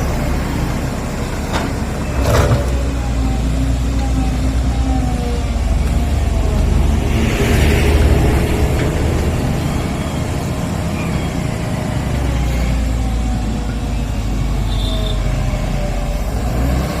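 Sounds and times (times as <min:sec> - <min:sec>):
diesel engine rumbling: 0:00.0 - 0:17.0
short high squeal: 0:07.1 - 0:11.8.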